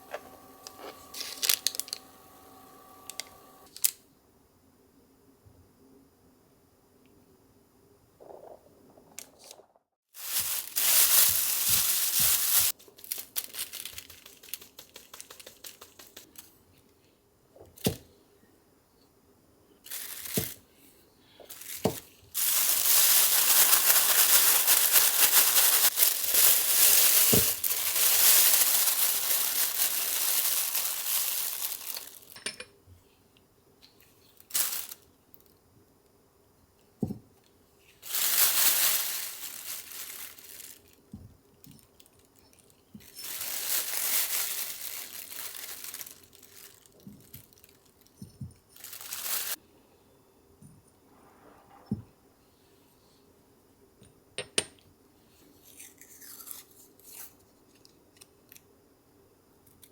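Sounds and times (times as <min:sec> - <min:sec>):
wrapping crinkling: 0:00.0 - 0:03.9, 0:10.2 - 0:16.5, 0:19.9 - 0:20.6, 0:21.5 - 0:32.4, 0:34.2 - 0:35.6, 0:38.0 - 0:41.1, 0:41.8 - 0:49.6.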